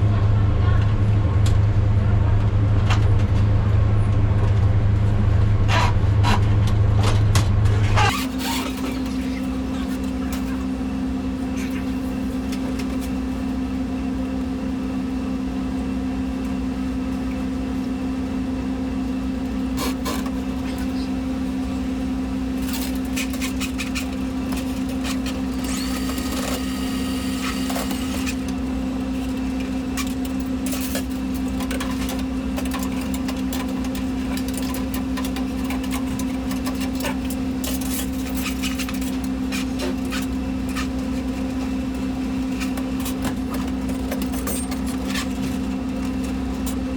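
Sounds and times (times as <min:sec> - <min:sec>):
steady motor hum: 0:00.0 - 0:46.9.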